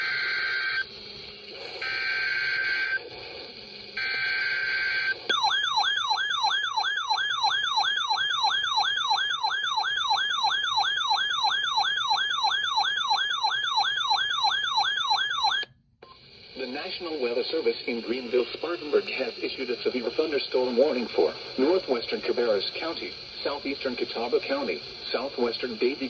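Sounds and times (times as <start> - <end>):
warbling warning alarm tone: 4.1 - 15.7.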